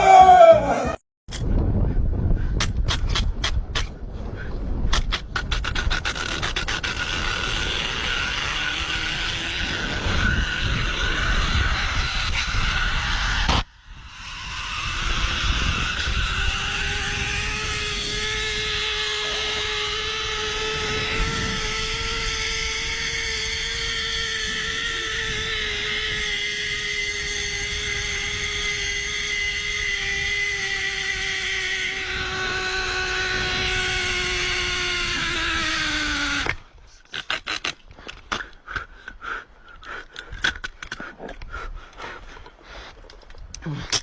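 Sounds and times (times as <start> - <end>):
motor running high-pitched: 6.0 - 36.6.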